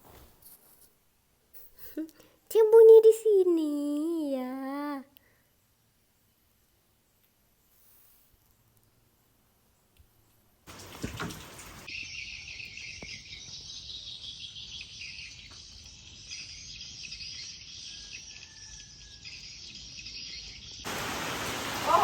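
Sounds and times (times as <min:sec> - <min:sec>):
birds chirping: 0:10.7 - 0:22.0
insects chirping: 0:10.7 - 0:22.0
burst of noise: 0:20.9 - 0:22.0.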